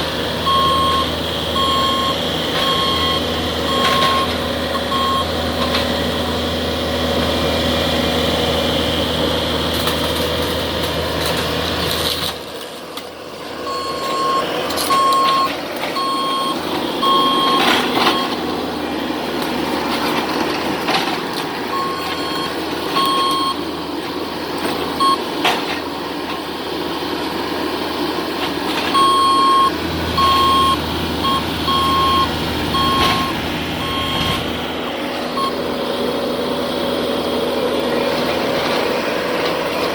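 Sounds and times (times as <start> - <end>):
engine running: 0.0 - 39.9
backup alarm beeping: 0.4 - 5.3, 13.6 - 18.4, 21.7 - 23.6, 25.0 - 25.2, 28.9 - 34.4, 35.4 - 35.6.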